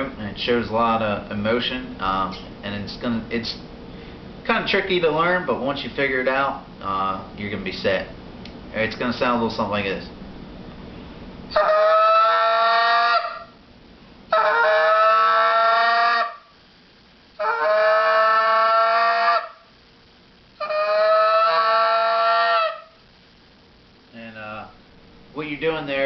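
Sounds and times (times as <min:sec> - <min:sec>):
goose call long held notes: 0:11.5 - 0:13.6, 0:14.3 - 0:16.6, 0:17.4 - 0:19.7, 0:20.6 - 0:23.0.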